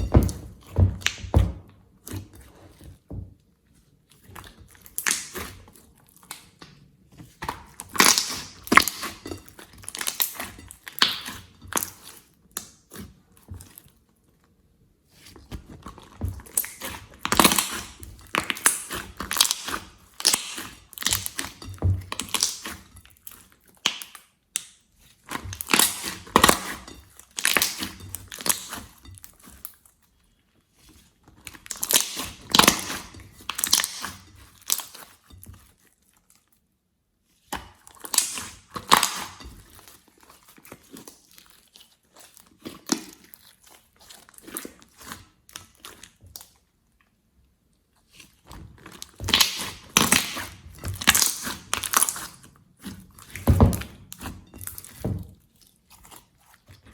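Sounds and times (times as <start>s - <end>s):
slime crackling and popping: 4.5s - 5.6s, 7.5s - 13.0s, 16.4s - 24.8s, 25.4s - 28.8s, 31.6s - 35.1s, 37.8s - 39.5s, 48.8s - 56.7s.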